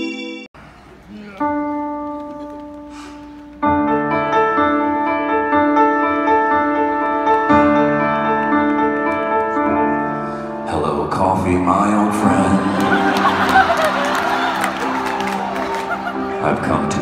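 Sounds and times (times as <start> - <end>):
slow piano chords: 0.0 - 17.0.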